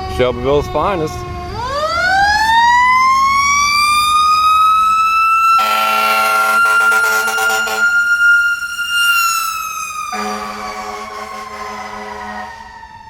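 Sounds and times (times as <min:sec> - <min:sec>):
emergency vehicle siren wailing: 0:00.0 - 0:13.0
horn blast: 0:05.6 - 0:08.4, 0:10.1 - 0:13.0.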